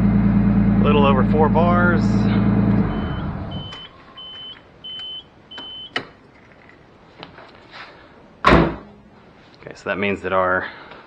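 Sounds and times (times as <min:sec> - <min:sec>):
engine hum: 0:00.0 - 0:07.0
car warning chime beeps: 0:02.8 - 0:06.0.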